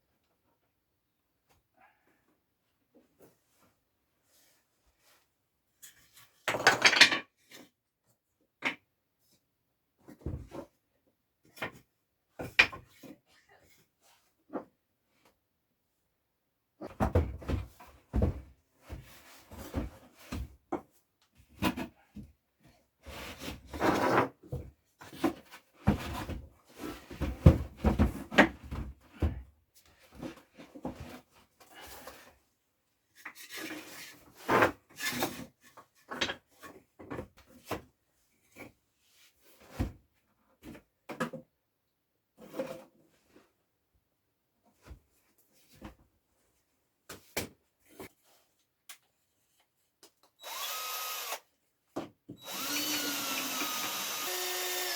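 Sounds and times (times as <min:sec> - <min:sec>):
wooden cupboards knocking and scraping: 0:23.3 - 0:29.5.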